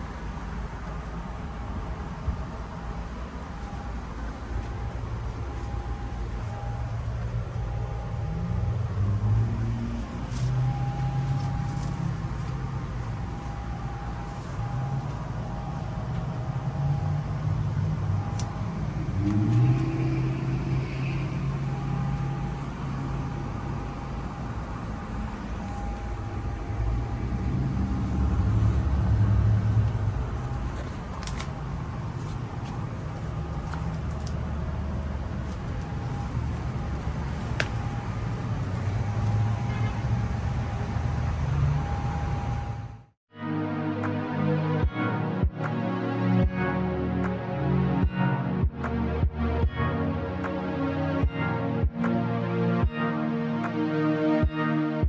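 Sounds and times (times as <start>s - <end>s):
air conditioner units humming: 28.3s - 39.5s.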